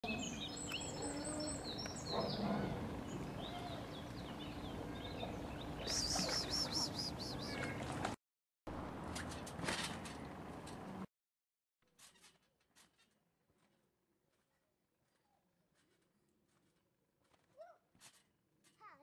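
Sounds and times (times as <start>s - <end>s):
songbirds chirping and singing: 0.1s - 7.8s
repeated high chirps: 5.8s - 7.6s.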